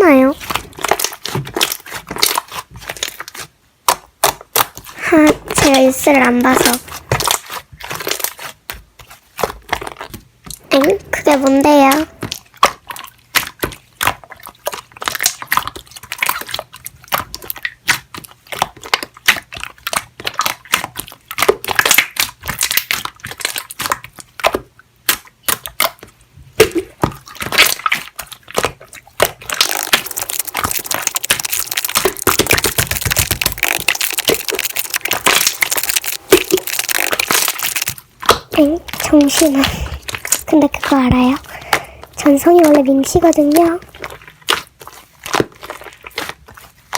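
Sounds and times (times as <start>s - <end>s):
slime squeezed sticky clicks: 29.5s - 44.6s.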